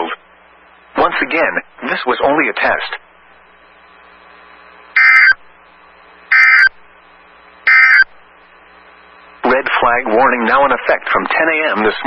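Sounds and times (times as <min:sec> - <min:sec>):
faint radio hiss: 0:00.0 - 0:12.0
warbling data bursts: 0:05.0 - 0:05.4, 0:06.3 - 0:06.7, 0:07.7 - 0:08.1.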